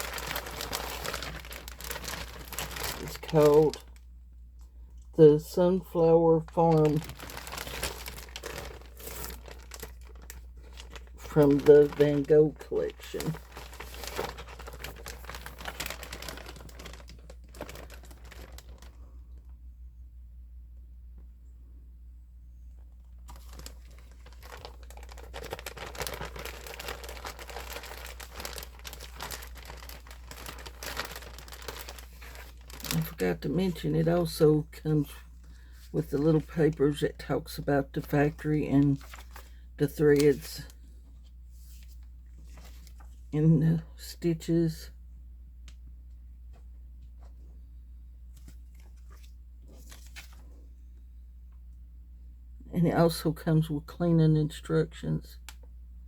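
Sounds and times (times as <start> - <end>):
plastic packaging crinkling: 0.0 - 4.0, 5.4 - 19.5, 23.0 - 40.9, 41.6 - 43.2, 48.3 - 50.6.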